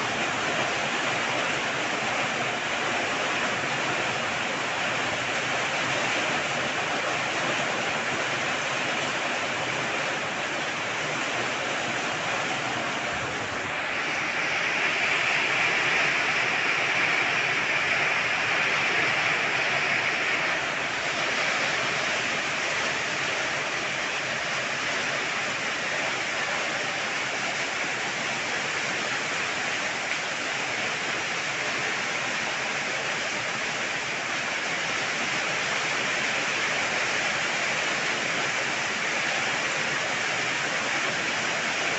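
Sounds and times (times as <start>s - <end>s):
heavy rain: 0.0s - 41.9s.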